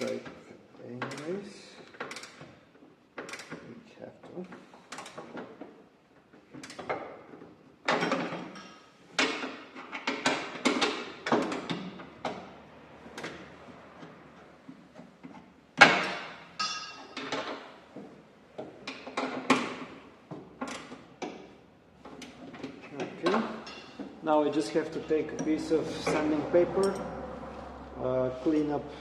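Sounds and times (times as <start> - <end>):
metal tools clacking: 15.9 - 17.7, 22.1 - 27.2
metallic clank ringing: 16.6 - 17.2, 23.6 - 24.0.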